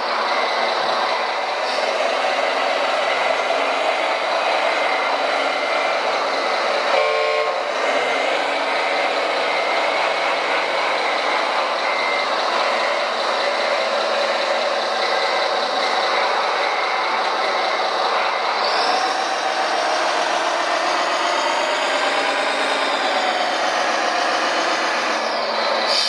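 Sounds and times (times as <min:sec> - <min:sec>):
model truck motors running: 0:00.0 - 0:26.0
brief tone: 0:06.9 - 0:07.7, 0:11.8 - 0:13.7
reversing beeps: 0:08.8 - 0:25.3.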